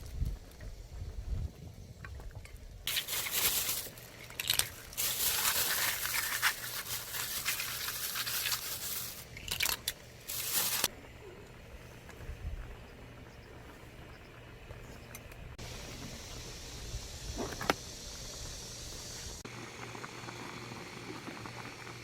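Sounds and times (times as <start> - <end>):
crinkling and rustling: 2.4 - 10.9.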